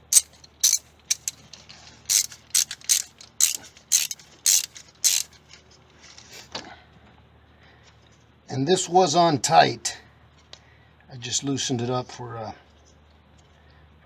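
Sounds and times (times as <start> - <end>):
faint metal sounds: 0.0 - 1.3, 2.1 - 5.3
ratchet wrench clicking: 0.0 - 1.3, 2.1 - 5.3.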